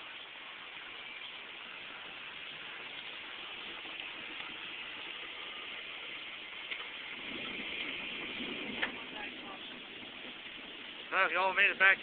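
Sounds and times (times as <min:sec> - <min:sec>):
heavy rain falling: 0:00.0 - 0:12.0.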